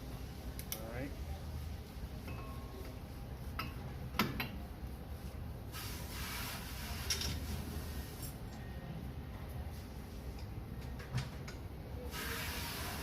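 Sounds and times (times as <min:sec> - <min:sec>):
hiss: 0:05.7 - 0:08.3, 0:12.1 - 0:13.0.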